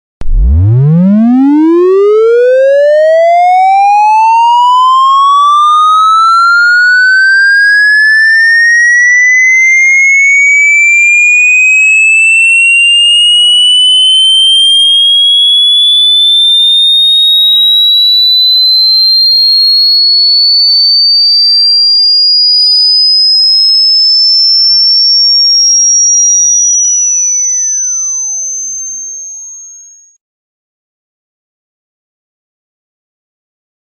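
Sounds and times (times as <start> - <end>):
rising synthetic ringtone: 0.2 - 3.0, 8.4 - 19.9, 26.5 - 30.0.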